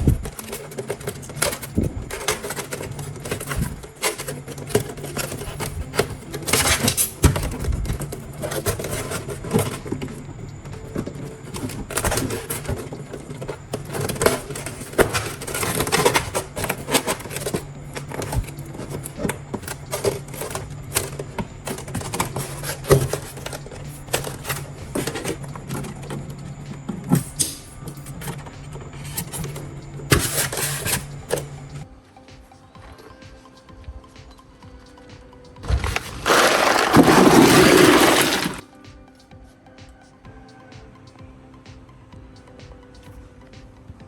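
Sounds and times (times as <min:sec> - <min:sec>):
handling clicks and clatter: 0:00.0 - 0:31.8, 0:35.6 - 0:38.6.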